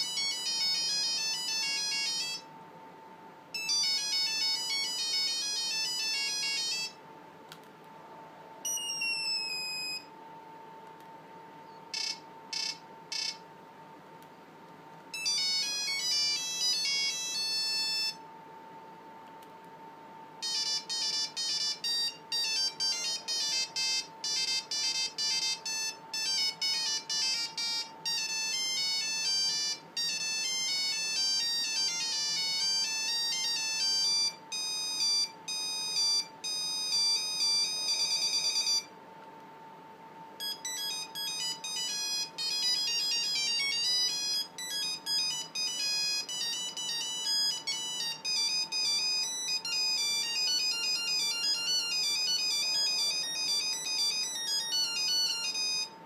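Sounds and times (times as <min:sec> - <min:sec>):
phone ringtone beeping melodies: 0:00.0 - 0:02.5, 0:03.5 - 0:07.0, 0:08.6 - 0:10.1, 0:11.9 - 0:13.4, 0:15.1 - 0:18.2, 0:20.4 - 0:38.9, 0:40.4 - 0:56.0
short phone beeps: 0:08.7 - 0:10.1.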